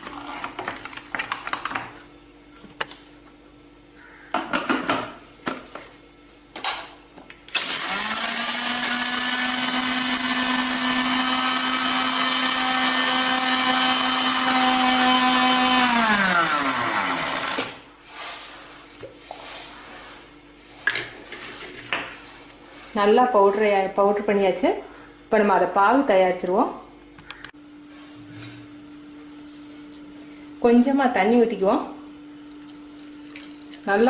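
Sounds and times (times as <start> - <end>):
mixer grinder motor whine: 7.6 - 17.9.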